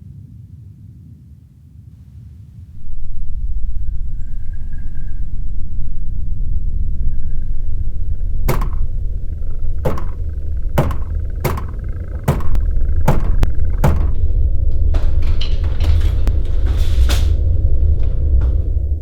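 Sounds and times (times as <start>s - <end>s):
sharp knocks: 8.5s - 14.3s.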